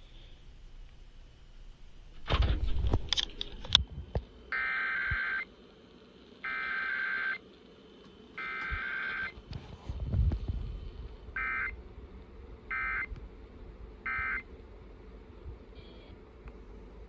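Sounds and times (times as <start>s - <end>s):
shrill warbling data bursts: 11.4s - 11.8s, 12.7s - 13.1s, 14.0s - 14.5s.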